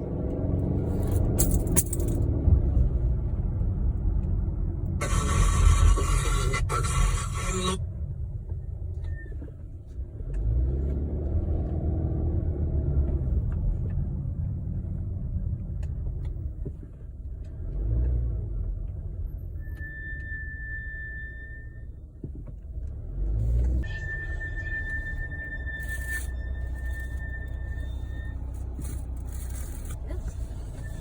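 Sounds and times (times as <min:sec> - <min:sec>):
car road rumble: 0:00.0 - 0:31.0
high-pitched brake squeal: 0:19.5 - 0:22.0, 0:23.8 - 0:31.0.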